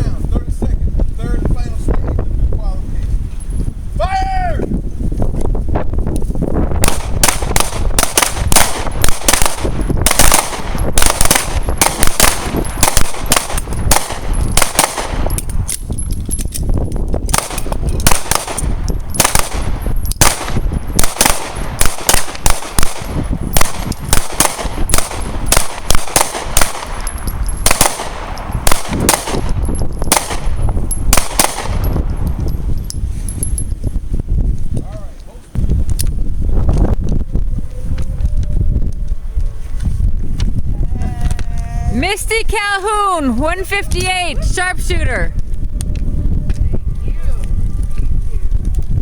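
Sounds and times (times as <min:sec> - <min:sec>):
pistols firing: 0:06.8 - 0:15.4, 0:17.3 - 0:32.0.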